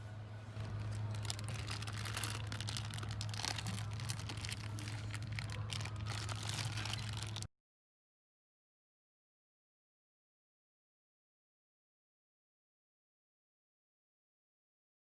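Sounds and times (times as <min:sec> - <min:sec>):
dense irregular crackling: 0:00.6 - 0:07.5.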